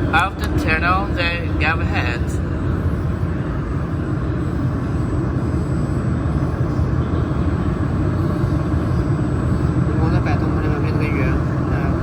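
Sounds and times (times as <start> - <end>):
faint high whine: 0.0 - 12.0
machinery rumble and hiss: 0.0 - 12.0.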